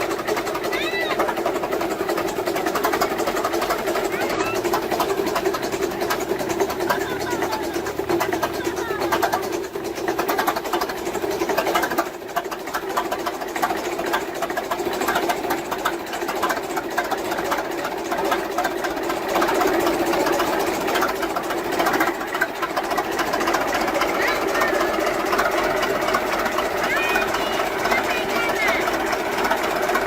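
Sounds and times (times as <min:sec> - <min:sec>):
machine clattering: 0:00.0 - 0:30.0
machine hum: 0:00.0 - 0:30.0.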